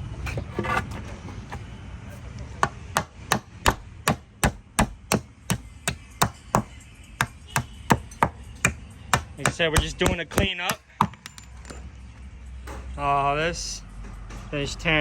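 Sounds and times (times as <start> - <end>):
hammer striking a board: 2.6 - 11.5.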